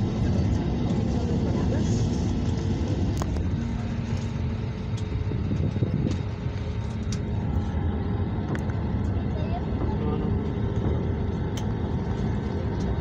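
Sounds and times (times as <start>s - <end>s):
airliner cabin rumble: 0.0s - 13.0s.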